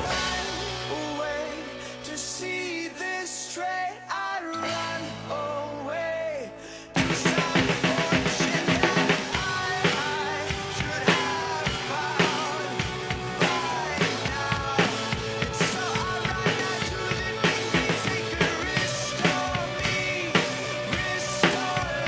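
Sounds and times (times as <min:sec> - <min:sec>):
drum kit beat: 0:00.0 - 0:02.4, 0:07.0 - 0:22.0
rock band music: 0:00.0 - 0:22.0.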